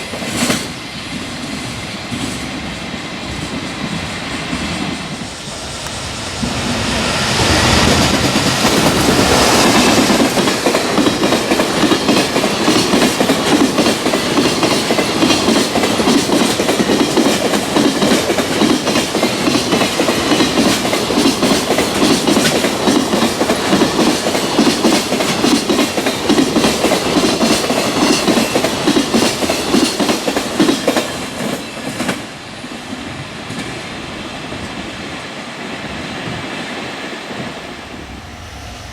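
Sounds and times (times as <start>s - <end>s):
locomotive approaching: 0.0s - 32.2s, 33.4s - 38.9s.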